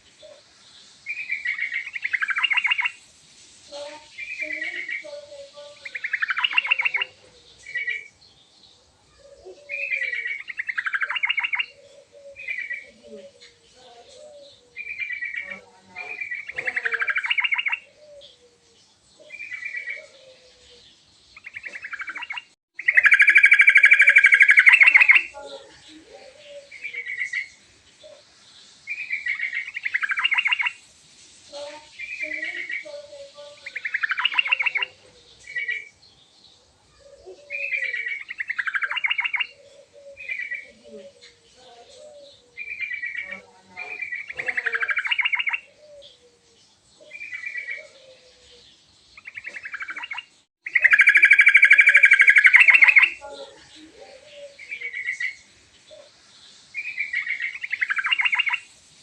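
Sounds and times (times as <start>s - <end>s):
bulbul singing bubbly phrases: 1.1s - 3.0s, 3.7s - 8.1s, 9.5s - 18.3s, 21.4s - 27.5s, 29.0s - 30.8s, 31.5s - 35.9s, 37.4s - 46.2s, 49.2s - 55.4s, 56.8s - 58.7s.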